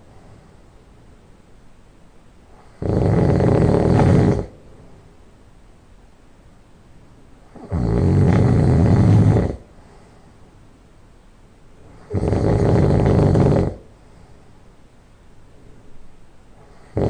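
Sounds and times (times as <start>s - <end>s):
loud nasal snoring: 2.6s - 4.6s, 7.5s - 9.7s, 11.9s - 13.9s, 16.7s - 17.0s.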